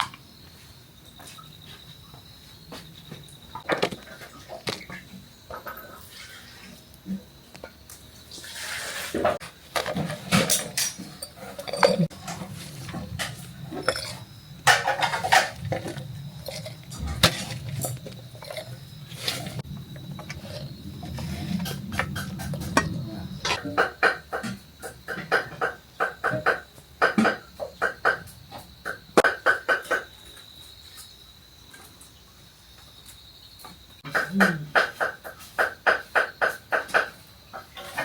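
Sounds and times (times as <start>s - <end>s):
dishes and utensils clinking: 9.2s - 18.6s.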